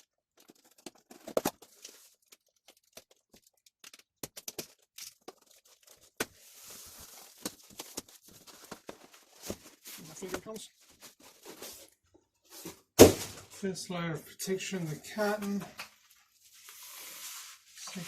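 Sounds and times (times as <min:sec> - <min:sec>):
cardboard crackling and clicking: 0:00.2 - 0:06.4
packaging rustling: 0:00.3 - 0:12.9.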